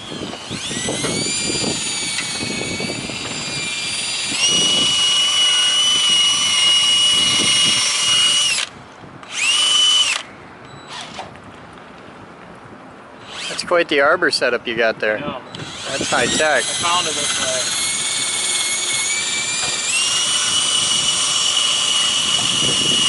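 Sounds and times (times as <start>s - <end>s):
power tool motor whine: 0.0s - 10.3s, 13.2s - 13.7s, 15.5s - 23.0s.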